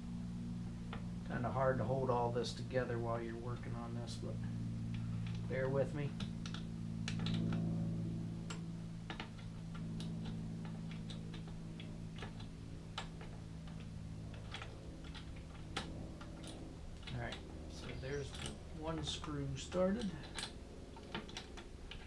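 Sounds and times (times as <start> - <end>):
steady low hum: 0.0 - 22.0
metal parts clicking and tapping: 8.4 - 22.0.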